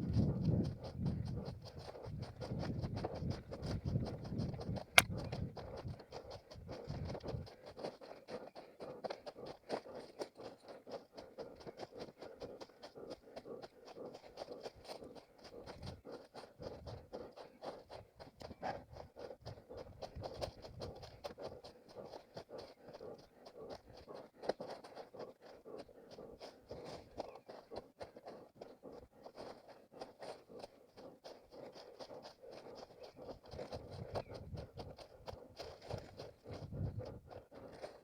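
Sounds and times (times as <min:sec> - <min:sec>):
footsteps running on forest floor: 0:00.0 - 0:38.0.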